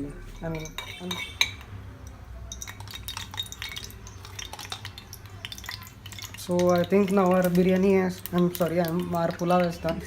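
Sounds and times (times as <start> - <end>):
metal spoon scraping a pan: 0.3 - 1.7.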